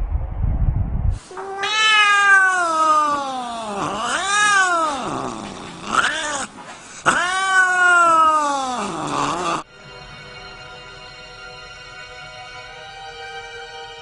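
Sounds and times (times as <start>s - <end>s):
cat yowling: 1.3s - 9.6s.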